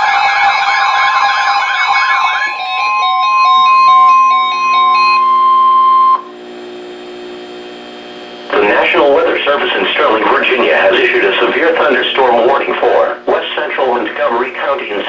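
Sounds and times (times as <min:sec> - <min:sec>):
warbling siren: 0:00.0 - 0:06.5
steady alarm tone: 0:00.0 - 0:15.0
stepping chime melody: 0:02.2 - 0:06.2
low radio hum: 0:03.9 - 0:15.0.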